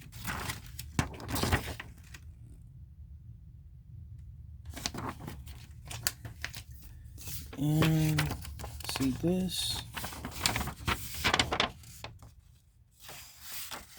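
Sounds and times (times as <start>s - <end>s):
packing material rustling: 7.2s - 12.1s.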